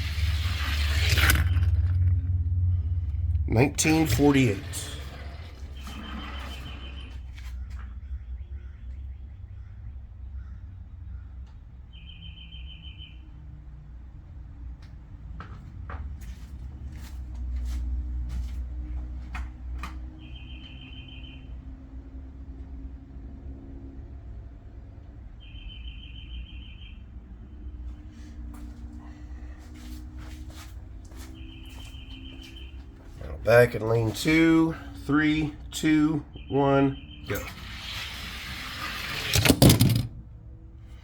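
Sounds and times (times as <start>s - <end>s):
steady low rumble: 0.0s - 5.9s
bird trilled song: 5.8s - 7.2s, 11.9s - 13.3s, 20.2s - 21.5s, 25.4s - 27.0s, 36.3s - 37.4s.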